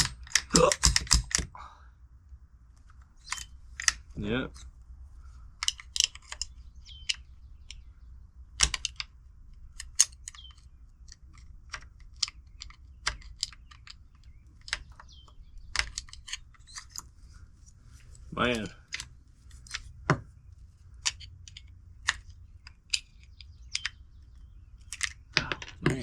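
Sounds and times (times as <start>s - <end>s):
rifle action metallic clicks: 8.6s - 9.1s.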